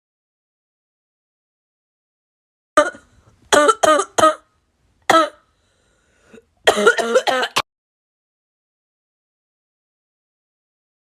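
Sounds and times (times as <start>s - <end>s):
person coughing: 2.8s - 4.4s, 5.1s - 5.4s, 6.3s - 7.6s.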